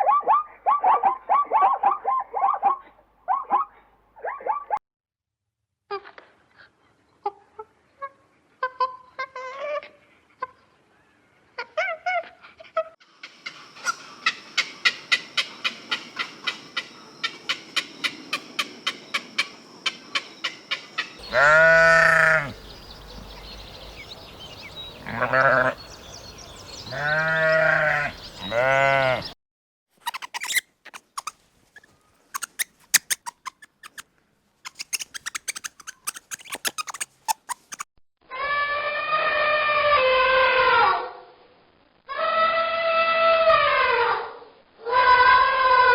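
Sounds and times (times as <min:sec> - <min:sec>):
farm animals bleating: 0:21.2 - 0:22.6, 0:25.0 - 0:25.8, 0:26.9 - 0:29.4.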